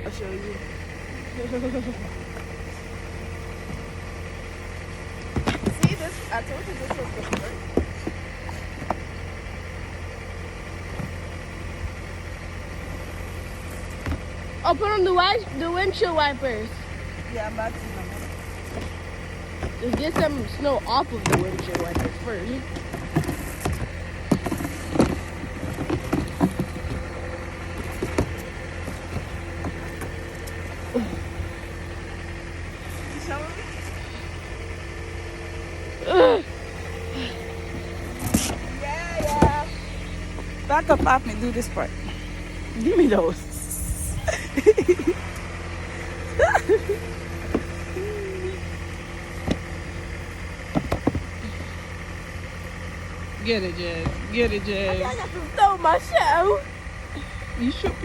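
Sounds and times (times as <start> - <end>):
car engine idling: 0.0 - 58.0
knocks and scrapes clearing snow: 5.2 - 9.1, 17.3 - 31.3, 37.2 - 42.2.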